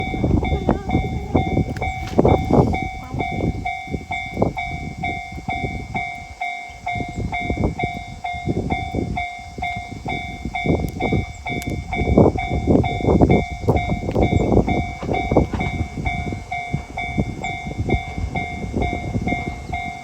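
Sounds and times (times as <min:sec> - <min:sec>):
low rumbling: 0:00.0 - 0:06.2
level crossing warning bell: 0:00.0 - 0:20.0.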